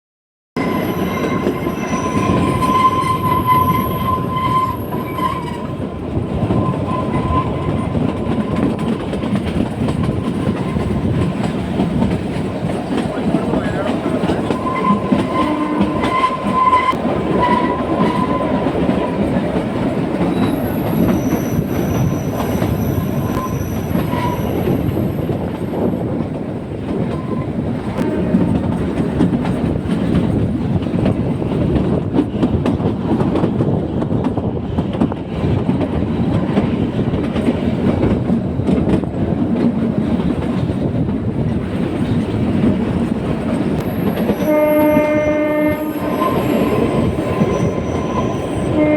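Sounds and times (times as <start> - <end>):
high-pitched wheel squeals: 0.6 - 5.8, 6.5 - 8.8, 14.4 - 18.6, 20.3 - 25.0, 43.8 - 48.9
train wheels clattering over rails: 0.7 - 48.9.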